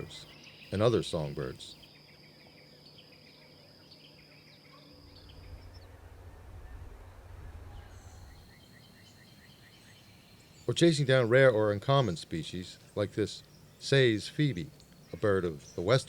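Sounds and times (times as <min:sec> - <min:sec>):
insect-like drone: 0:00.0 - 0:16.0
low rumble: 0:05.3 - 0:08.4.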